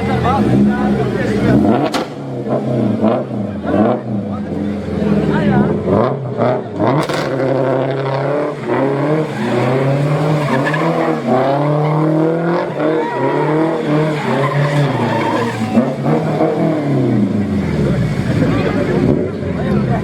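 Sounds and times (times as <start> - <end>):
car engine revving: 0.0 - 20.0
tyres squealing: 8.5 - 17.0.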